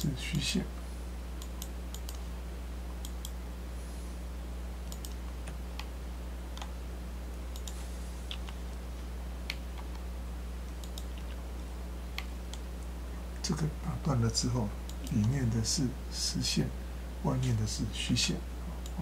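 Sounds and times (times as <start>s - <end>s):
low electrical hum: 0.0s - 19.0s
mouse and keyboard clicks: 10.7s - 11.4s.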